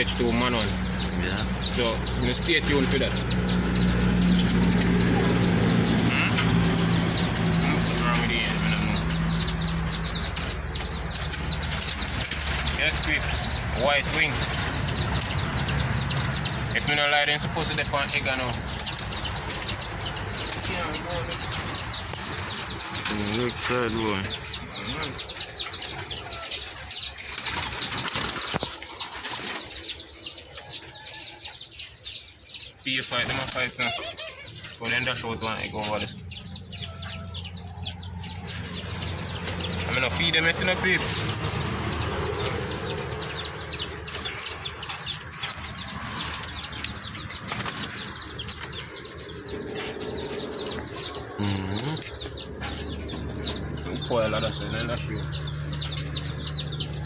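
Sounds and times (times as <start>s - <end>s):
small birds chirping rapidly: 0.0s - 57.0s
pigeons flapping wings: 27.2s - 29.8s, 47.3s - 49.0s.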